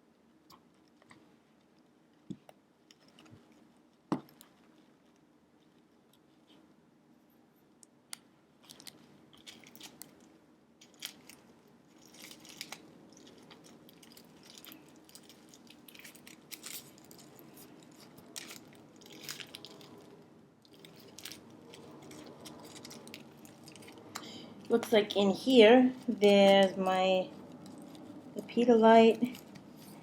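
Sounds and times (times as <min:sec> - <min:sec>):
low steady hum: 0:00.0 - 0:30.0
packaging crinkling and rustling: 0:08.6 - 0:30.0.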